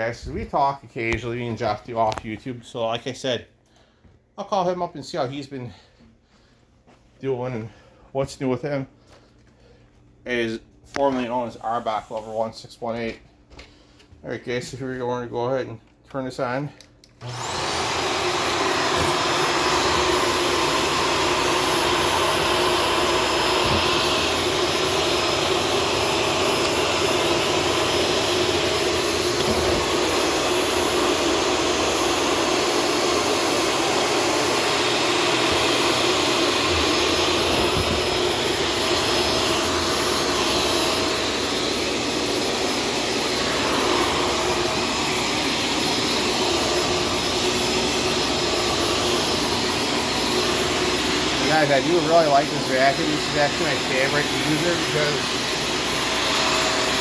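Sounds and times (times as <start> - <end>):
vacuum cleaner motor whine: 10.9 - 12.7, 17.1 - 57.0.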